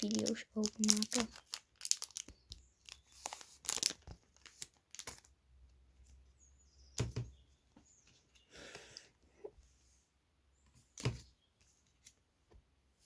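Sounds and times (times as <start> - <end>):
paper wrapping crinkling: 0.0 - 5.3.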